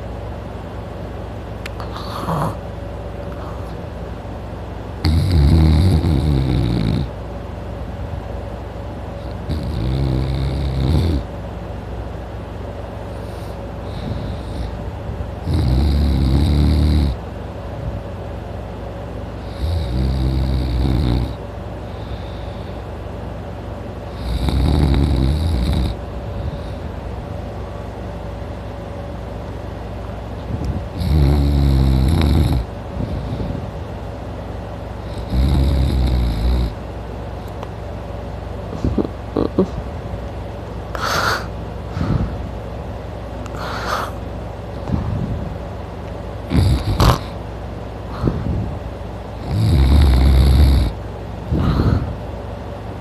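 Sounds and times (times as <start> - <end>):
man snoring: 1.8 - 2.6, 5.0 - 7.2, 9.3 - 11.3, 15.4 - 17.2, 19.4 - 21.4, 24.1 - 26.9, 30.9 - 32.7, 35.0 - 36.8, 41.0 - 42.2, 43.5 - 44.2, 46.5 - 47.4, 49.4 - 52.1
quiet breathing: 13.1 - 14.8, 21.8 - 23.0, 41.0 - 42.5, 43.5 - 44.2, 48.1 - 48.6, 51.5 - 52.2.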